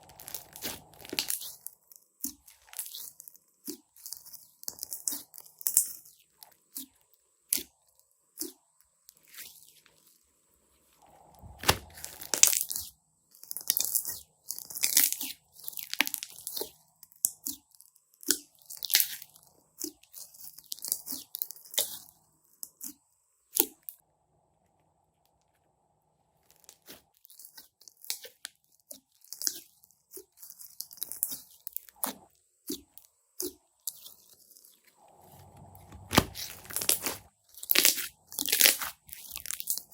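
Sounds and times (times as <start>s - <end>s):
slime squished by hand: 0.0s - 1.6s, 11.1s - 12.9s, 26.6s - 39.9s.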